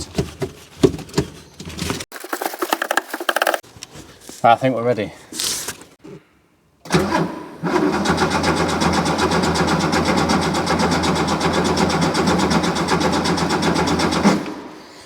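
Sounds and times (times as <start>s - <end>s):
car engine cranking on starter: 6.9s - 15.0s.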